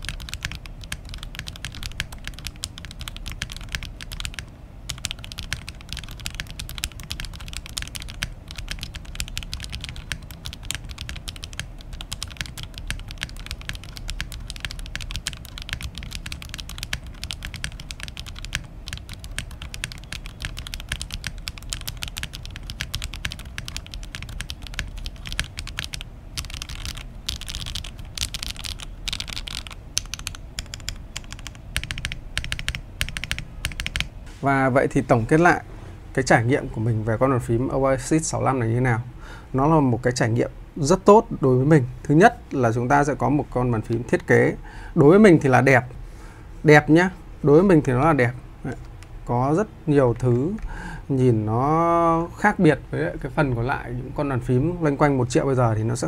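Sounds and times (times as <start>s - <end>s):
mechanical keyboard key clacks: 0.0s - 34.1s.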